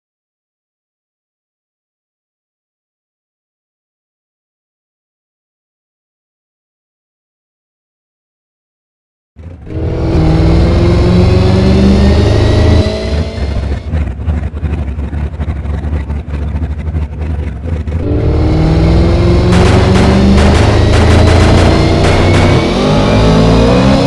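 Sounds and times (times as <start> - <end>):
drag car engine revving: 9.4 - 24.0.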